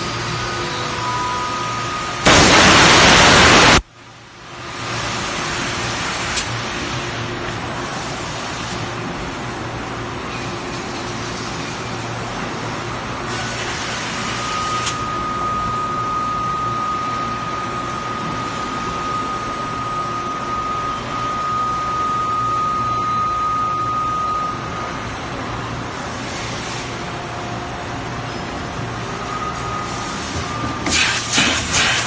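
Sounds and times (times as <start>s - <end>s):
steady high whine: 0.0s - 7.4s, 14.3s - 31.0s
machinery humming and hissing: 0.0s - 32.0s.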